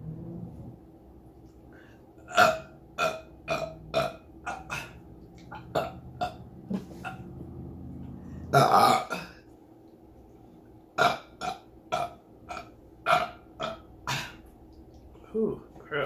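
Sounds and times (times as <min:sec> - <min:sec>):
person burping: 0:02.3 - 0:07.2, 0:08.5 - 0:09.4, 0:11.0 - 0:14.4.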